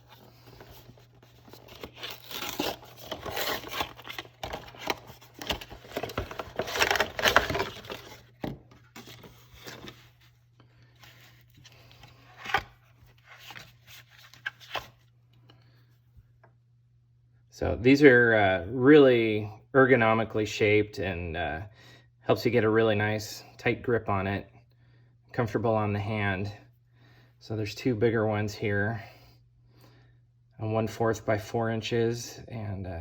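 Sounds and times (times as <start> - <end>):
packaging tearing and rustling: 0.0 - 10.3, 11.0 - 15.0.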